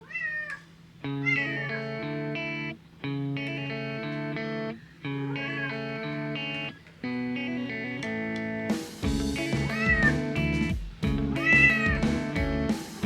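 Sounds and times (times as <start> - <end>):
cat meowing: 0.0 - 2.1, 5.1 - 6.8, 9.7 - 10.2, 11.4 - 12.0
background music: 5.8 - 13.0.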